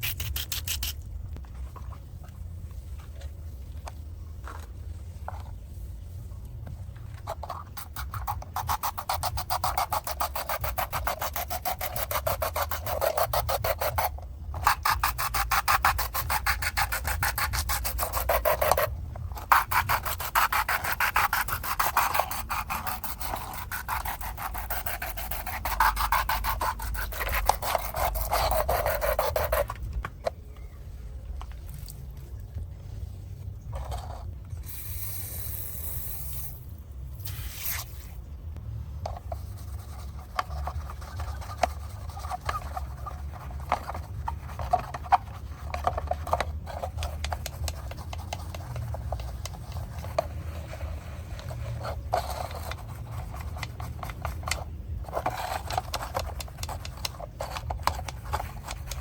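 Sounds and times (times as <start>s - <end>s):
rasping scrubbing on model car: 0.0s - 1.0s, 7.2s - 29.8s
short hiss: 37.2s - 38.2s.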